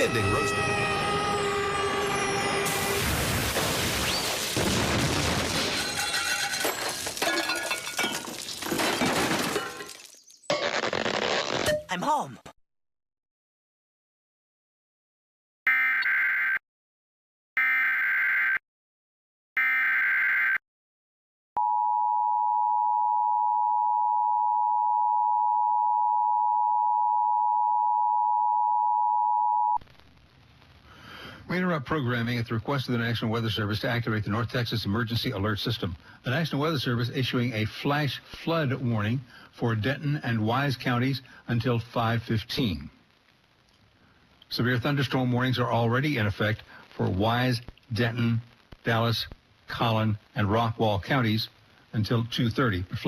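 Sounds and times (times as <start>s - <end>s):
steady high alert tone: 0.0s - 3.0s
crashing and shattering debris: 2.6s - 10.5s.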